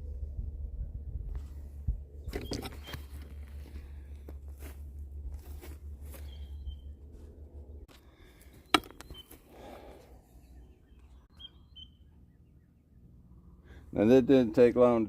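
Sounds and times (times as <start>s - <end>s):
faint high chirps: 10.4s - 13.1s.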